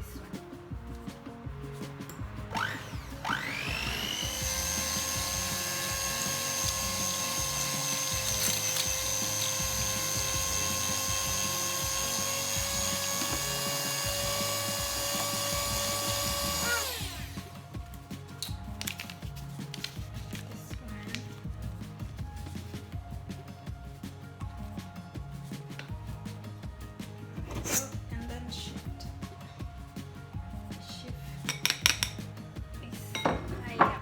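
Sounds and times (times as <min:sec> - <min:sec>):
electric mixer motor whining: 0:02.5 - 0:17.9.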